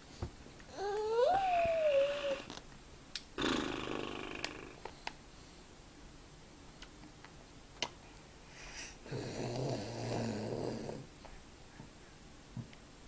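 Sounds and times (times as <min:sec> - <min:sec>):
baby making throaty sound: 0:00.7 - 0:02.6, 0:03.4 - 0:04.8.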